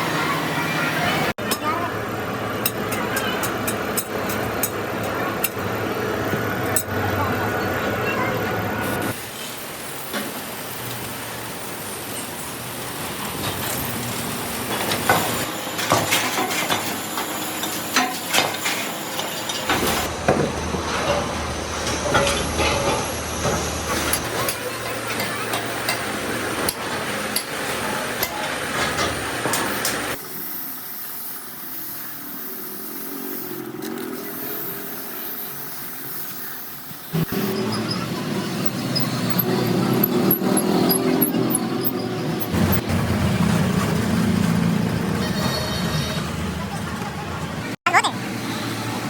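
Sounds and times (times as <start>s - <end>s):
machine hiss: 29.6s - 41.0s.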